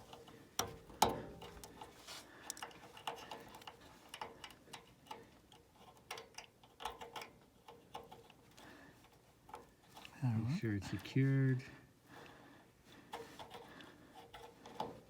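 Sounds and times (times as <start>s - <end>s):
small clicks of wire connectors: 0.0s - 10.2s.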